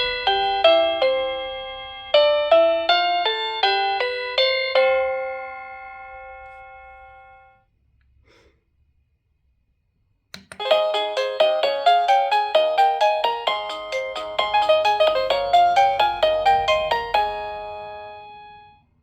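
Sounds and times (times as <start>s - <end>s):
doorbell chime melody: 0.0s - 7.6s, 10.6s - 18.8s
click: 10.3s - 10.6s.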